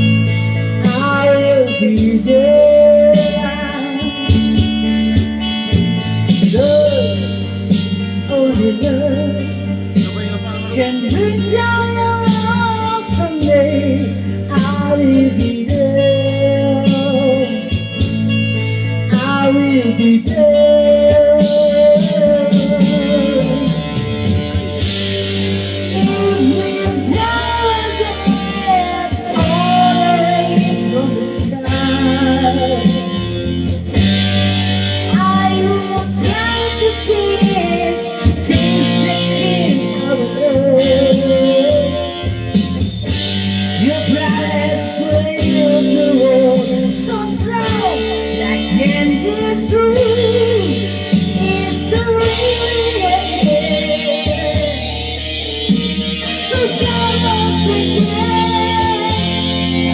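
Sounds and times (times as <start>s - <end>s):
melodic guitar lead: 0.0s - 59.9s
steady bass line: 0.0s - 59.9s.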